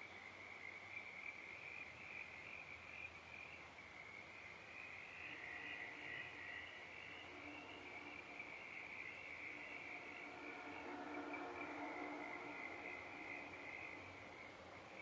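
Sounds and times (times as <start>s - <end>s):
faint low hum: 2.5s - 15.0s.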